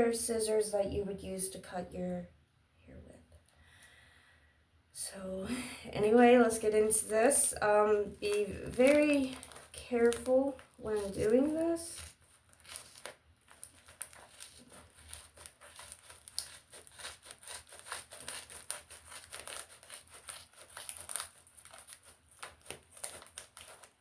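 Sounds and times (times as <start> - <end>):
plastic wrap crinkling and tearing: 6.0 - 24.0.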